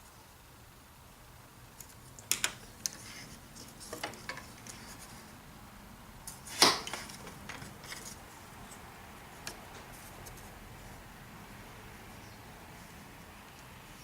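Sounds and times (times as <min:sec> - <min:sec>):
wood strips clicking and tapping: 0:01.8 - 0:03.0, 0:03.6 - 0:04.9
sharp wood snap: 0:06.6 - 0:07.1.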